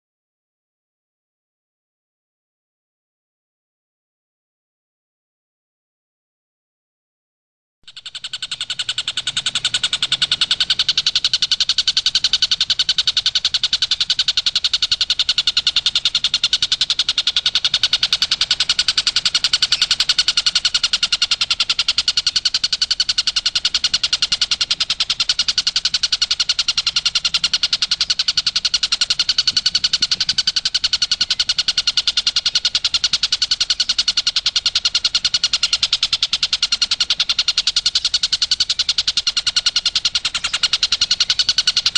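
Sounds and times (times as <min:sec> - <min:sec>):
kingfisher rattling trill: 0:07.9 - 0:41.9.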